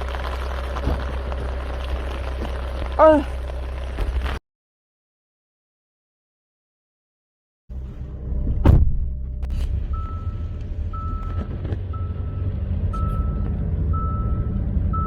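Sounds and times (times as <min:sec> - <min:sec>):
car rumble: 0:00.0 - 0:04.4, 0:07.7 - 0:15.0
thump: 0:08.5 - 0:09.7
car warning beep: 0:09.8 - 0:15.0.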